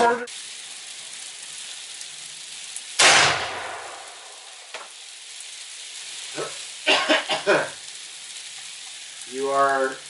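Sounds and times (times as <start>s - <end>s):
freezing rain and wind hiss: 0.0s - 10.0s
rifle shot: 3.0s - 4.4s.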